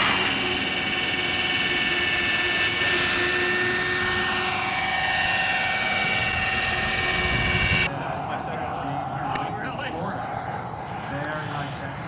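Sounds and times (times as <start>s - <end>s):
model aircraft motor whine: 0.0s - 7.9s.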